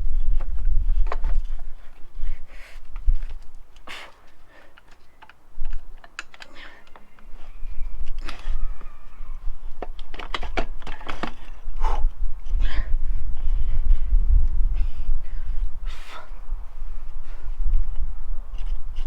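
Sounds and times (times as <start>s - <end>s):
light clicks and metal knocks: 4.6s - 8.6s.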